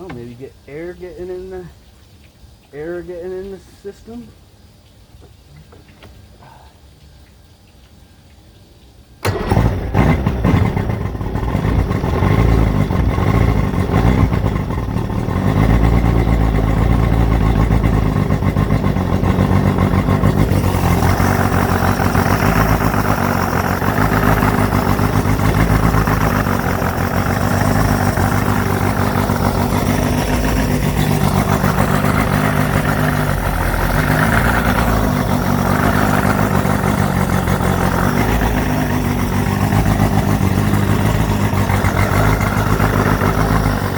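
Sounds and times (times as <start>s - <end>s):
boat engine running: 9.2s - 43.9s.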